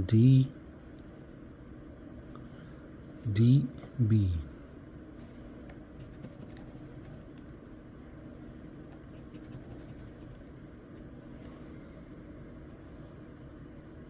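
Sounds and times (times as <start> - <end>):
scratching lottery ticket: 5.9 - 11.1.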